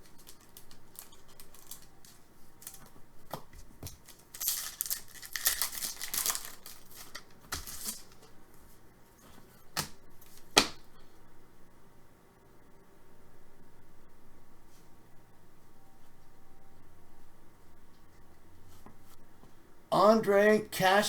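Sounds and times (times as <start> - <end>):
foil wrappers tearing and crinkling: 0.0 - 3.0, 3.8 - 8.3.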